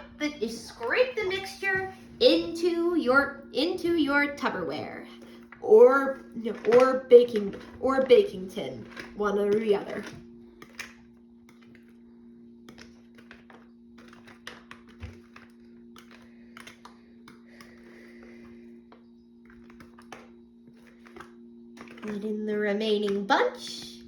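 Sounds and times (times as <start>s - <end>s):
steady low hum: 0.0s - 24.0s
spoon scraping cereal mixture from bowl: 6.5s - 11.9s, 12.7s - 18.7s.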